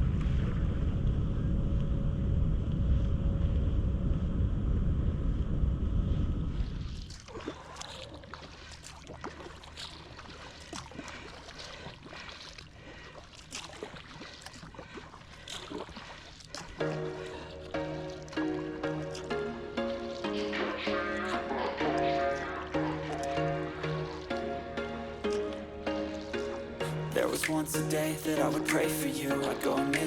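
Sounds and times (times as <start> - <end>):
steady low rumble: 0.0 - 7.2
kayak paddle splashing: 6.8 - 30.0.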